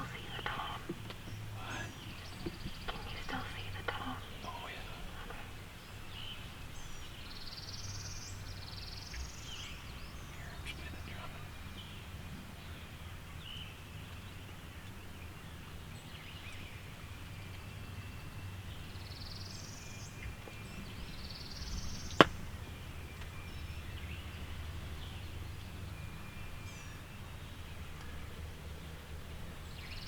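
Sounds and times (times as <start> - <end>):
songbirds singing: 0.0 - 30.0.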